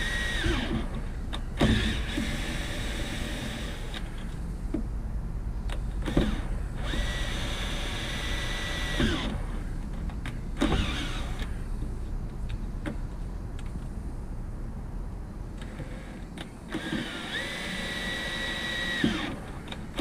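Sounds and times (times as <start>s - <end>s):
power drill whine: 0.0s - 0.9s, 1.6s - 4.0s, 6.1s - 9.4s, 10.6s - 11.6s, 15.7s - 19.6s
steady low rumble: 0.0s - 17.5s.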